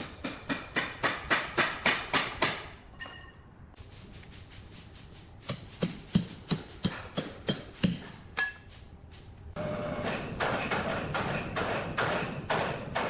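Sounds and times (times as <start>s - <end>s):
hand tool striking wood: 5.4s - 8.6s.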